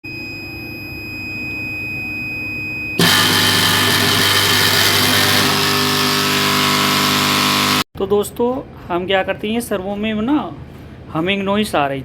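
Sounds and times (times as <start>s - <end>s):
electrical hum: 3.0s - 7.9s.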